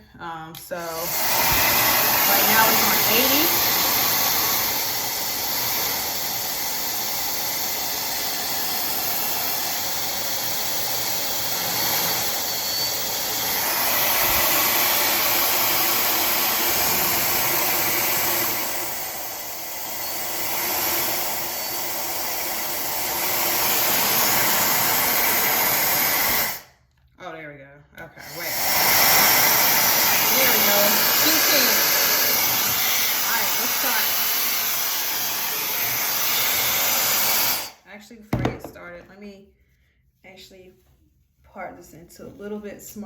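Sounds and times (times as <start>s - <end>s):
hair dryer blowing: 0.2s - 26.7s, 28.2s - 39.0s.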